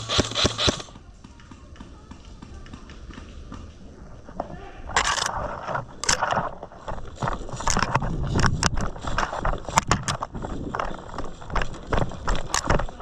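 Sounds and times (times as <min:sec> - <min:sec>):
gear rattling: 0:00.0 - 0:01.0, 0:05.0 - 0:13.0
footsteps: 0:00.0 - 0:13.0.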